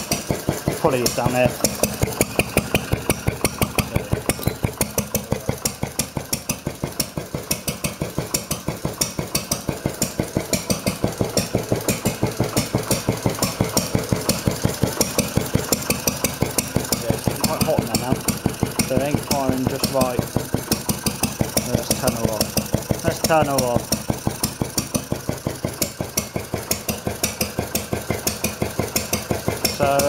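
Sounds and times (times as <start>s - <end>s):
stationary engine running: 0.0s - 30.0s.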